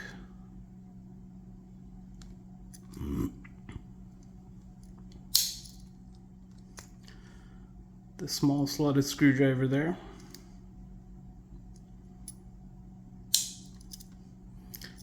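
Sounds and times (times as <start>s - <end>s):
knife tool snapping shut: 5.3s - 5.8s.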